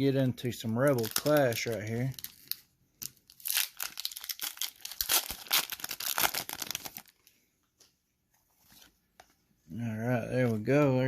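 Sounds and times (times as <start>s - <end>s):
foil wrapper crinkling and tearing: 0.6s - 7.2s.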